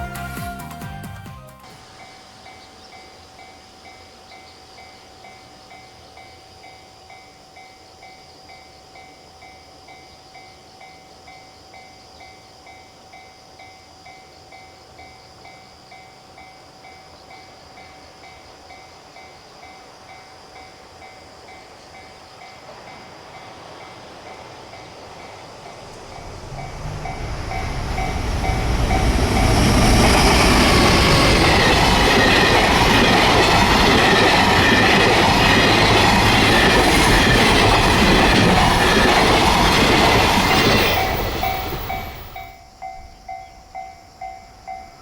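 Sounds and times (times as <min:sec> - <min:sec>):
level crossing warning bell: 0:01.8 - 0:45.0
approaching train rumble: 0:14.5 - 0:45.0.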